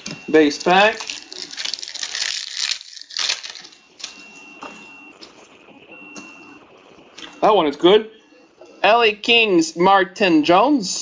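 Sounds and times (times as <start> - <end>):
foil pack crinkling and tearing: 0.7 - 4.1.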